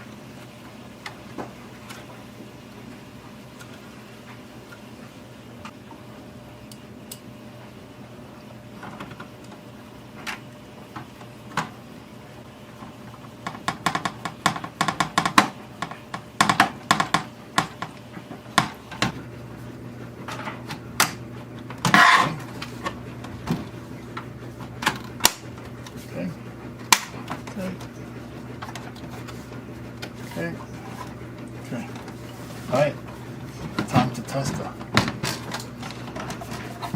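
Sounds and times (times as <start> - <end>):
hard parts clicking and knocking: 13.4 - 17.9.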